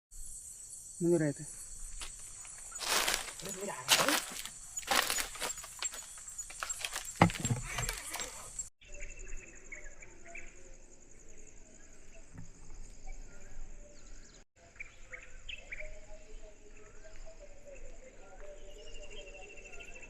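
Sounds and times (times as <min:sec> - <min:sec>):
insects trilling: 0:00.2 - 0:14.3.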